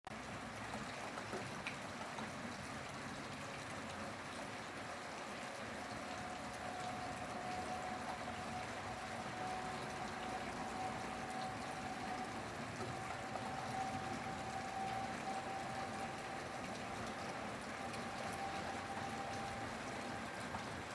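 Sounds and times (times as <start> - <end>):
steady rain hiss: 4.0 - 20.9
faint steady tone: 5.0 - 20.9.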